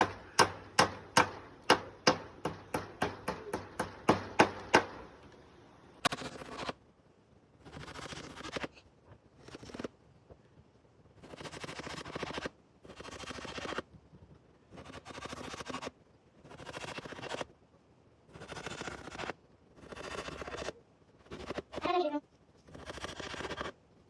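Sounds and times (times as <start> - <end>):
hammer blows ringing: 0.0 - 5.1
short rasping scrapes: 18.4 - 21.9, 22.7 - 23.8.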